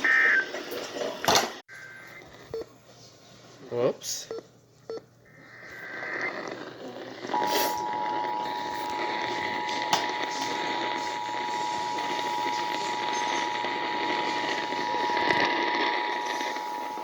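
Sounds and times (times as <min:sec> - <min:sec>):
two-tone attention signal: 0:07.3 - 0:17.0.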